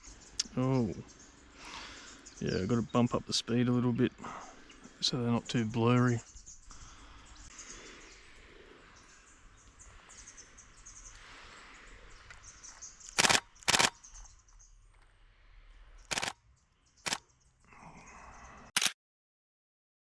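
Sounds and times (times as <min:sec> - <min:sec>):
birds chirping: 0:00.0 - 0:18.7
camera shutter bursts: 0:13.1 - 0:14.0, 0:16.1 - 0:16.4.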